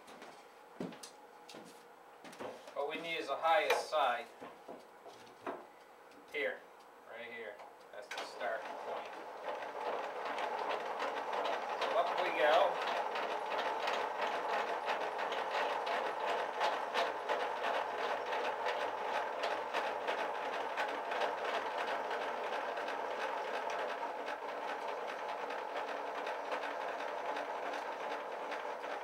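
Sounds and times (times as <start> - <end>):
crank turning clicks and rattles: 7.6 - 29.0.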